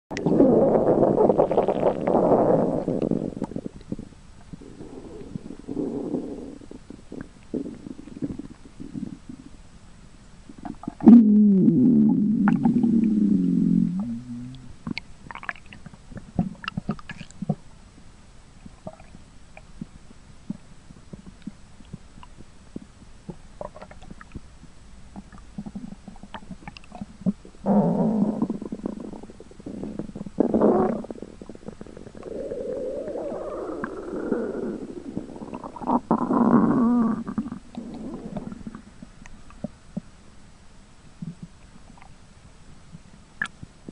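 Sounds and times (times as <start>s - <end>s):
stomach growling: 0.1s - 9.6s, 10.5s - 17.6s, 18.6s - 19.2s, 20.5s - 24.4s, 25.2s - 40.1s
small gurgles and clicks: 14.5s - 17.6s, 20.5s - 24.5s, 25.1s - 27.5s.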